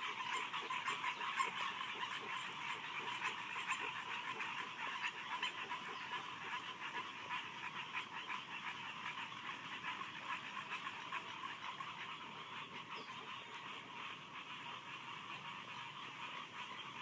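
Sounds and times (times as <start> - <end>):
frogs calling: 0.0 - 17.0.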